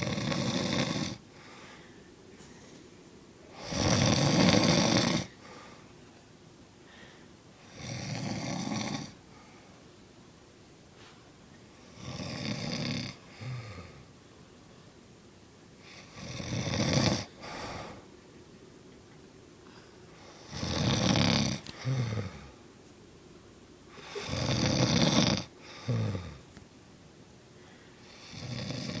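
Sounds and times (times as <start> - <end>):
woman snoring: 0.0 - 1.2, 3.5 - 5.4, 7.7 - 9.2, 11.9 - 14.0, 15.8 - 18.0, 20.3 - 22.6, 23.9 - 26.4, 28.0 - 29.0.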